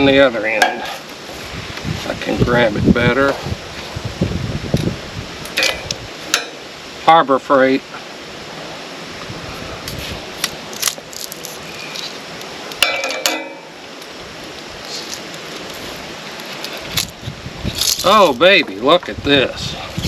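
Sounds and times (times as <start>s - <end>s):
ringing metal clink: 12.8s - 13.8s.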